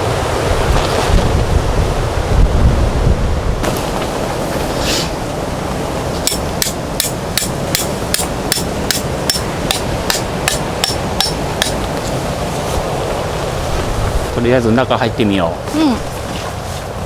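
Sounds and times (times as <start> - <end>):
wind noise: 0.0 - 14.8
tent peg being hammered: 6.2 - 11.9.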